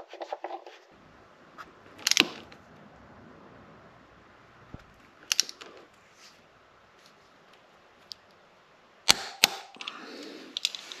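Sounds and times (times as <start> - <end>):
hard objects clicking and knocking: 1.9 - 2.6, 4.7 - 6.0.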